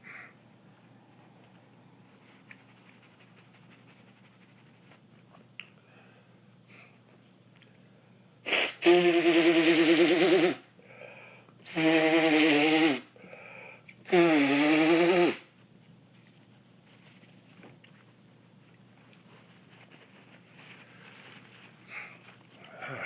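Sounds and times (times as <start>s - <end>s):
short breaths: 12.7s - 14.2s.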